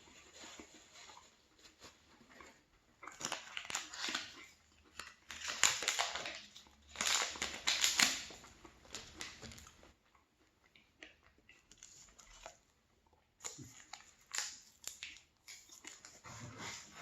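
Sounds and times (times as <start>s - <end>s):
chewing chocolate bar: 0.0s - 16.4s
crunching cookie pieces: 3.1s - 9.9s.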